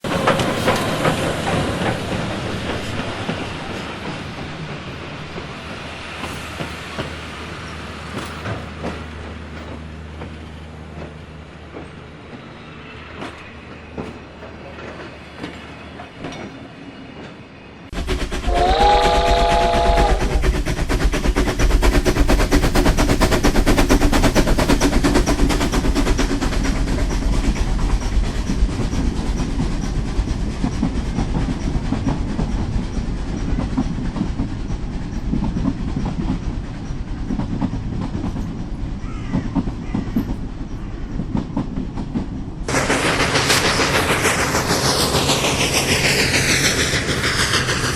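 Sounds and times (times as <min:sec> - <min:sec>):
wheels clacking over rail joints: 0:00.0 - 0:20.0, 0:20.8 - 0:47.9
train rolling: 0:00.0 - 0:47.9
train horn blast: 0:18.4 - 0:20.5.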